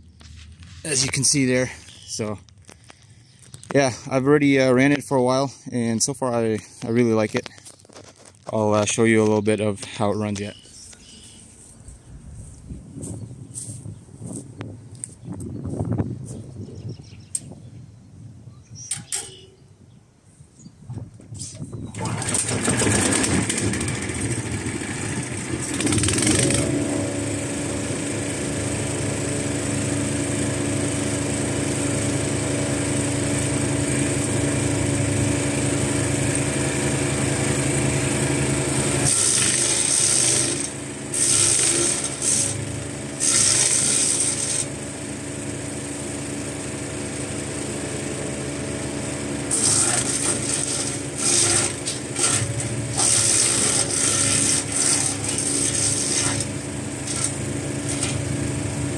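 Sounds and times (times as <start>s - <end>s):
wood chipper engine running: 0.2s - 11.7s, 21.8s - 58.9s
branches going through chipper: 21.9s - 58.9s.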